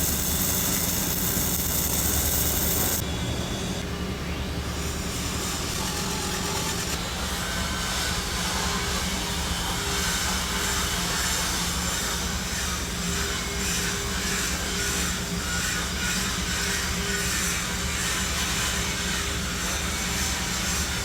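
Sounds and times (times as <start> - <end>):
welding arc crackling hiss: 0.0 - 3.0.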